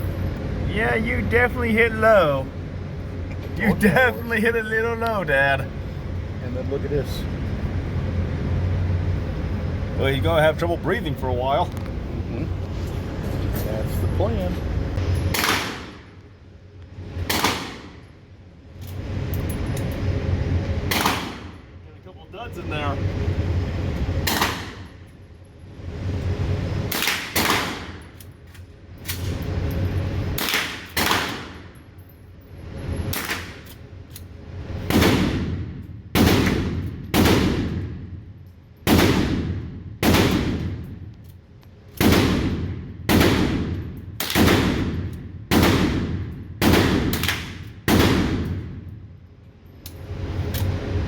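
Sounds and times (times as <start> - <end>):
gunshots ringing indoors: 15.2 - 16.2, 17.2 - 18.0, 20.8 - 21.6, 41.9 - 48.8.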